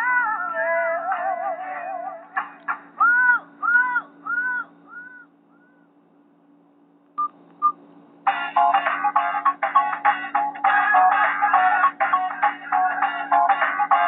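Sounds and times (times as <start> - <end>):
short beeps: 7.2 - 7.8.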